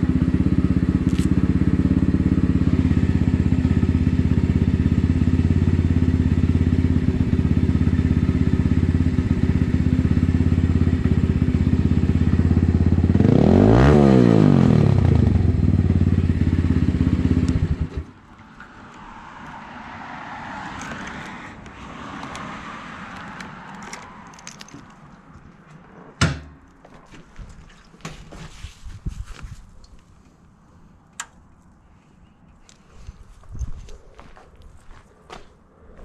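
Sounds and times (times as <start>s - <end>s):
motorcycle engine running: 0.0s - 18.2s.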